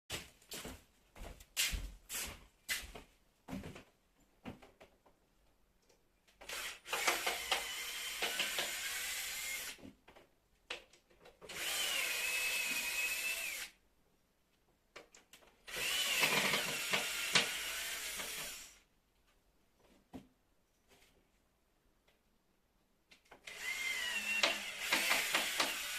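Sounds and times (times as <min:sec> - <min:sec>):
power drill whining: 0:06.4 - 0:09.8, 0:11.5 - 0:13.7, 0:15.7 - 0:18.8, 0:23.4 - 0:25.9.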